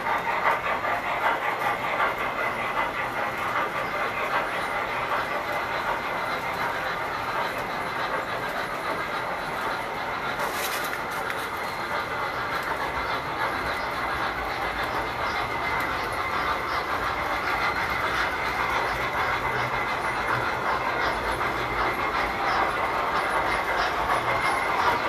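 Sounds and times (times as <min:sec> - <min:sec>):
model trains rolling on track: 0:00.0 - 0:25.0
wheels clicking over rail joints: 0:00.0 - 0:25.0.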